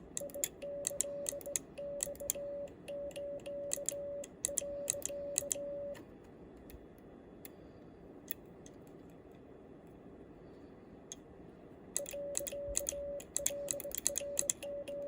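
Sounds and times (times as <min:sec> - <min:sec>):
morse key contacts clicking: 0:00.1 - 0:06.0, 0:12.0 - 0:15.0
morse code sidetone beeps: 0:00.2 - 0:06.0, 0:12.0 - 0:15.0.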